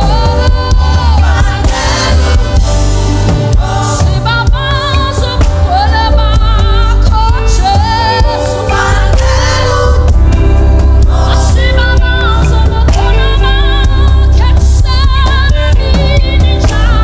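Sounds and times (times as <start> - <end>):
band accompaniment with strong bass: 0.0 - 17.0
person singing with vibrato: 0.0 - 17.0.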